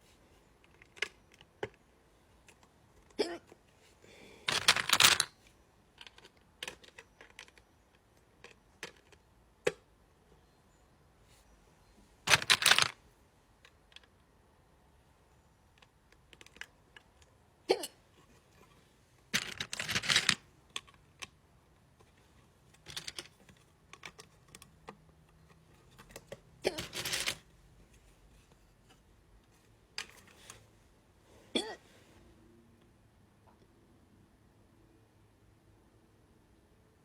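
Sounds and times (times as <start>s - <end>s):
rustling: 12.2s - 13.0s, 18.2s - 20.4s.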